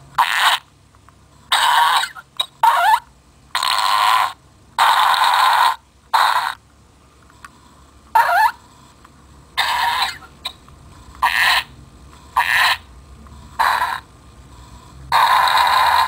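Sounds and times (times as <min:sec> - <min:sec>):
recorded fart sounds: 0:03.5 - 0:06.6, 0:15.1 - 0:16.0.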